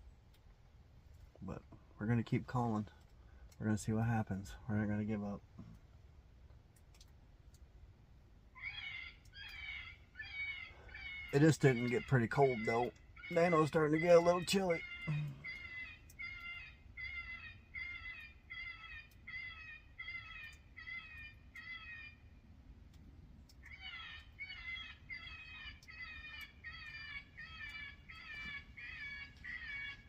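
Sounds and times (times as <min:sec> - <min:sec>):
electronic animal distress cries: 0:08.6 - 0:22.0.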